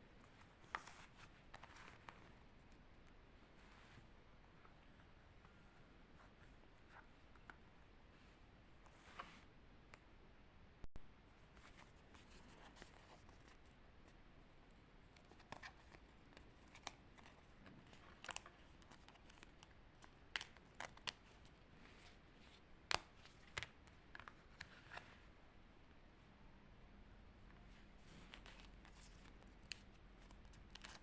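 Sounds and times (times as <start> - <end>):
paper rustling and clicking: 28.2 - 31.0.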